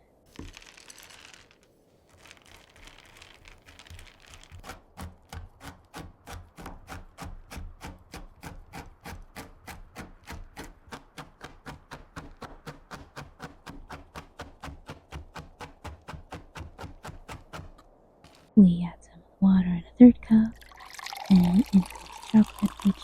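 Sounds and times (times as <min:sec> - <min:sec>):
knife chopping on cutting board: 0:05.0 - 0:17.8.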